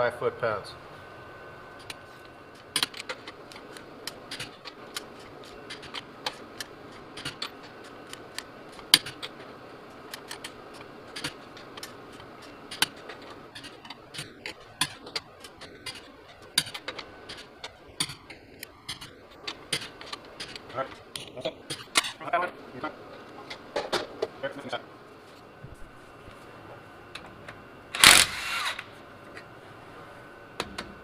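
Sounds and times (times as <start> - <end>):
hand tools clicking and clinking: 2.6 - 9.5, 10.1 - 22.2.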